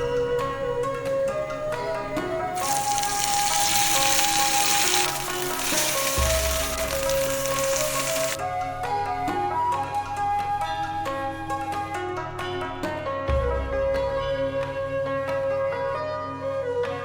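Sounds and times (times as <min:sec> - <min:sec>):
background music: 0:00.0 - 0:17.0
fish sizzling in hot oil: 0:02.5 - 0:08.4.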